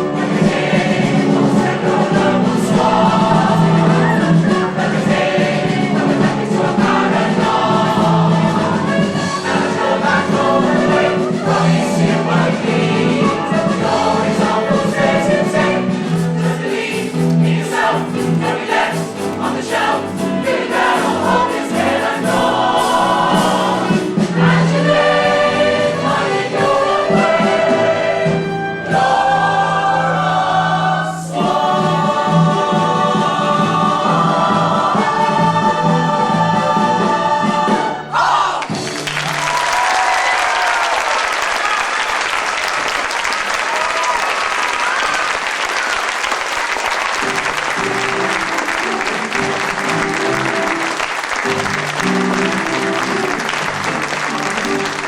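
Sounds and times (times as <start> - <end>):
cast singing as a chorus: 0.0 - 38.9
instrumental accompaniment: 0.0 - 39.9, 46.5 - 55.0.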